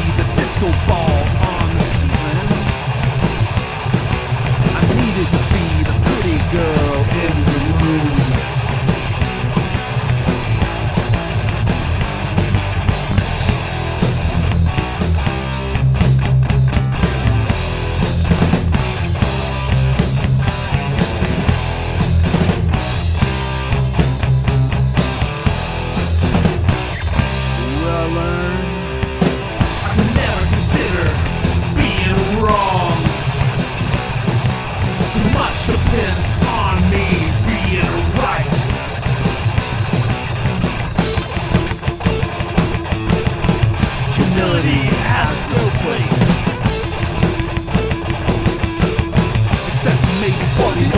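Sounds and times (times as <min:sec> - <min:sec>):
rock band playing: 0:00.0 - 0:50.9.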